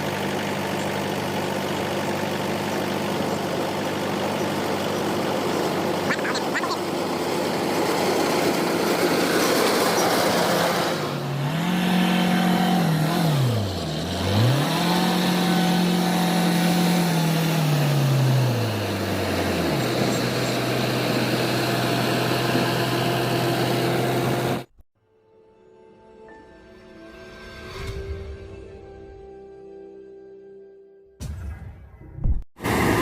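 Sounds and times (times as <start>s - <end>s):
combine harvester diesel engine: 0.0s - 24.8s, 32.6s - 33.0s
machinery noise: 0.6s - 24.7s, 32.6s - 33.0s.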